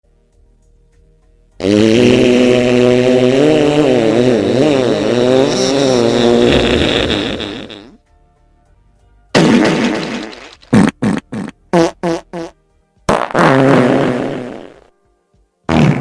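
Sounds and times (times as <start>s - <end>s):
long loud fart: 1.6s - 8.0s, 9.4s - 14.9s, 15.7s - 16.0s.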